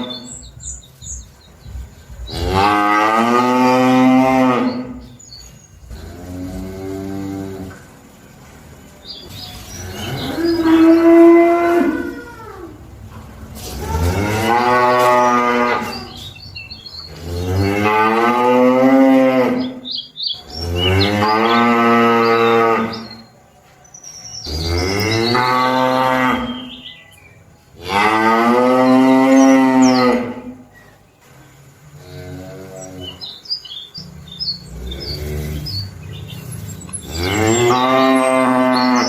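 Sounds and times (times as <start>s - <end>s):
cattle mooing: 2.2s - 5.1s, 9.8s - 16.2s, 17.1s - 19.8s, 20.5s - 23.2s, 24.5s - 27.1s, 27.8s - 30.6s, 34.0s - 39.0s.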